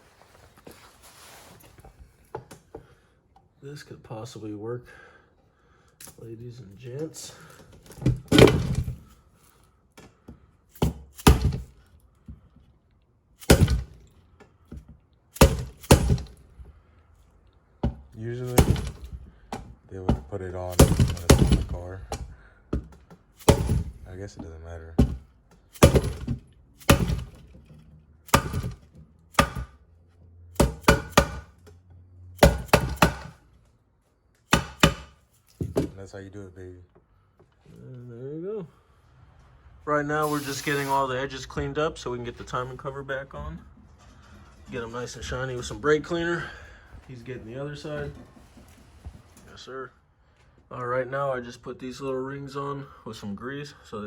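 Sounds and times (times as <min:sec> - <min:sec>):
sharp knocks tapping seal: 0:28.3 - 0:29.8, 0:30.6 - 0:31.5, 0:34.5 - 0:35.2.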